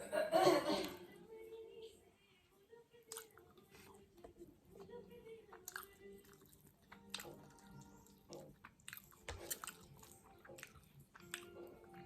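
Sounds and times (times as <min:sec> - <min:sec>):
quiet chewing: 0:02.9 - 0:12.0.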